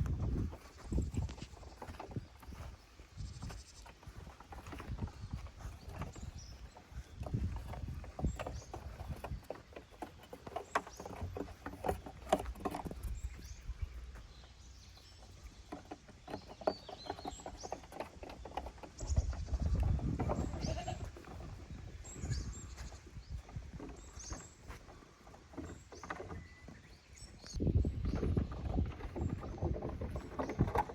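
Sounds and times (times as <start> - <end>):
light knocks and clatter: 0.0 - 30.9
goats bleating: 20.4 - 21.2.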